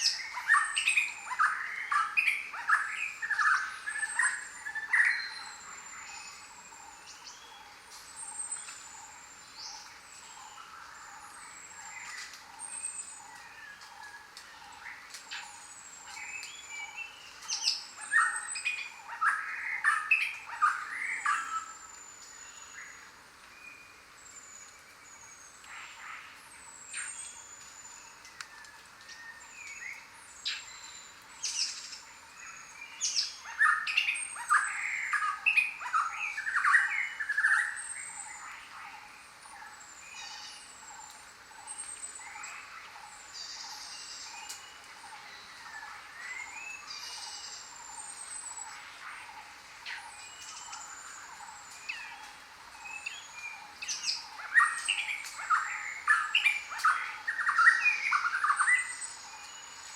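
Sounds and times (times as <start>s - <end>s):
steady hiss: 0.0s - 59.9s
birds whistling: 52.9s - 59.9s.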